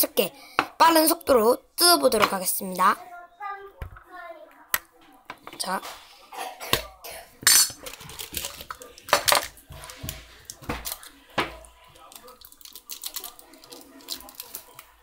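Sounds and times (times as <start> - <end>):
packaging crinkling: 12.0 - 15.0
snack packaging tearing: 12.0 - 15.0.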